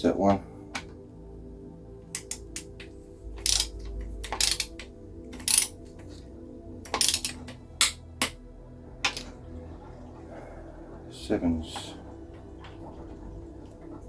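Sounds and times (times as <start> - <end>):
faint background music: 0.0 - 14.0
socket wrench clinking on bolts: 2.2 - 2.7, 3.4 - 4.8, 6.9 - 8.4.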